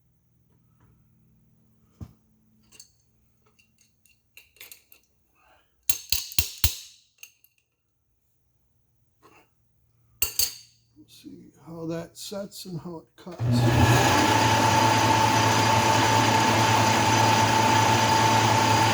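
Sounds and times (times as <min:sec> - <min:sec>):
small metal clicks: 0:02.6 - 0:05.2, 0:05.9 - 0:07.8
sharp metallic clanks: 0:10.2 - 0:10.8.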